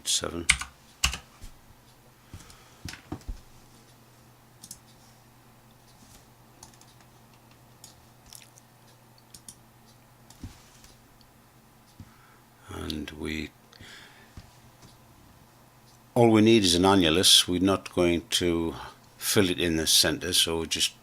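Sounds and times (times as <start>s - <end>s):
low steady hum: 0.0s - 21.0s
computer keys clicking: 0.5s - 1.3s, 4.6s - 4.9s, 6.6s - 8.0s, 9.2s - 9.6s.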